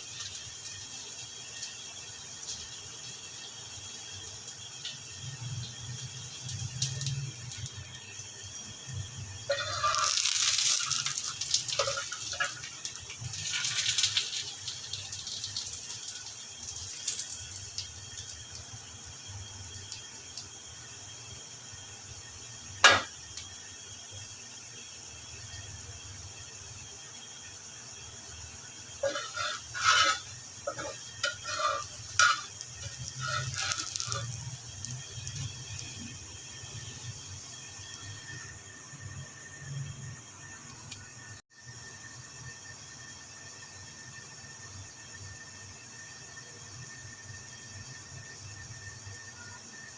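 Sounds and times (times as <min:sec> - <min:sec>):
flatbread sizzling in a pan: 0:00.0 - 0:49.9
oil popping and crackling: 0:04.8 - 0:08.0, 0:09.4 - 0:19.2, 0:29.0 - 0:38.8.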